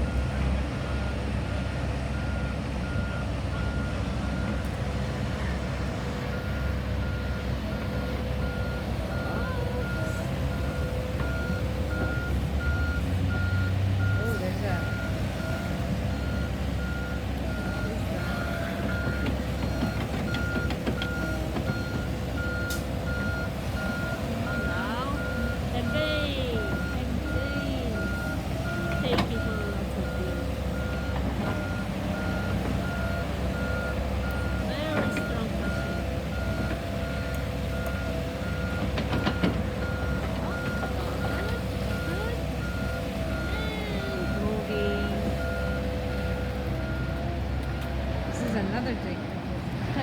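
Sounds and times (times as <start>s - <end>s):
diesel engine running: 0.0s - 50.0s
backup alarm beeping: 6.3s - 47.9s.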